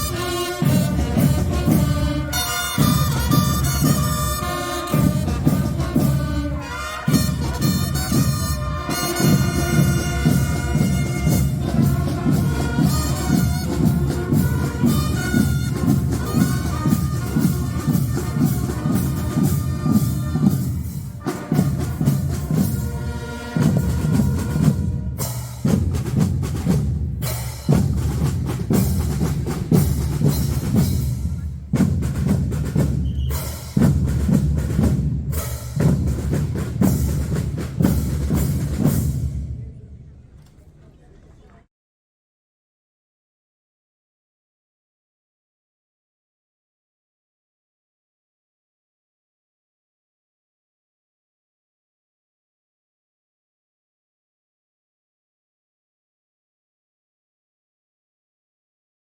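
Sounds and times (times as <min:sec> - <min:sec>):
marching band brass: 0:00.0 - 0:39.7
drums and percussion: 0:00.0 - 0:40.8.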